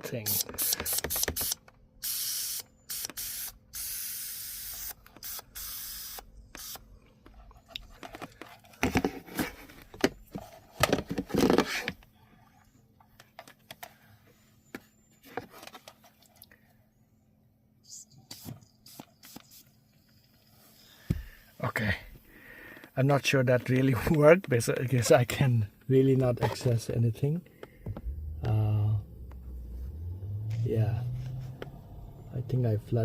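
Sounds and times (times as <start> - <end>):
aerosol spray hissing: 0.3 - 6.8.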